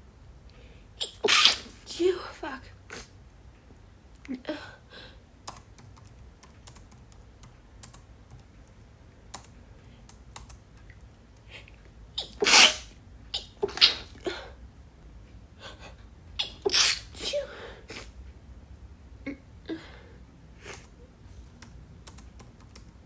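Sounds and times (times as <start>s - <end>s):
woman sneezing: 1.0s - 1.9s, 12.2s - 14.6s, 16.4s - 18.1s
typing on computer keyboard: 5.4s - 9.5s, 10.1s - 10.9s, 21.5s - 23.0s.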